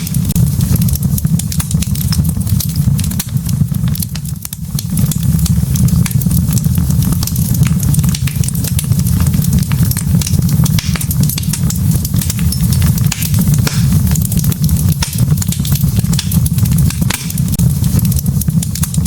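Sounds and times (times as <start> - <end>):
burning logs crackling and popping: 0.0 - 19.0
fire flames rumbling: 0.0 - 19.0.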